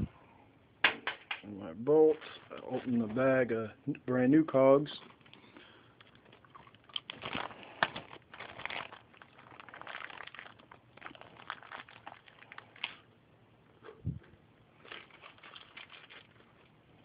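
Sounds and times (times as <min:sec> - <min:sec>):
plastic bag crinkling: 0:02.0 - 0:03.1, 0:05.0 - 0:13.1, 0:14.8 - 0:16.8.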